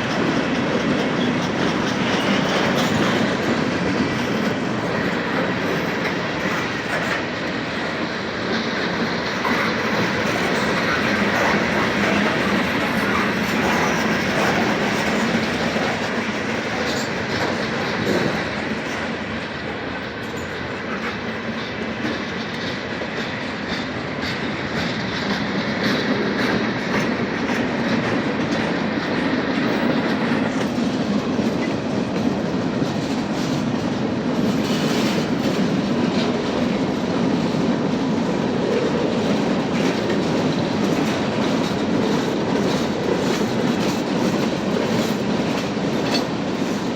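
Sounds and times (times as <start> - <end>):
freight train rumbling past: 0.0 - 46.9
train wheels clicking on rail joints: 0.0 - 46.9.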